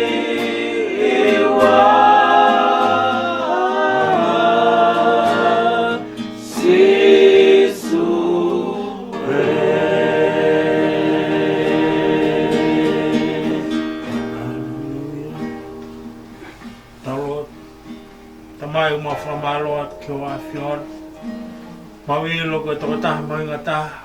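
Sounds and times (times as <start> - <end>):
choir singing a hymn: 0.0 - 15.9.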